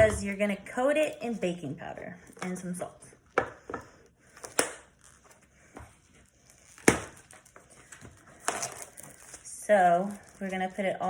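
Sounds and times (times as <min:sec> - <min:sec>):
packaging crinkling: 0:06.2 - 0:11.0.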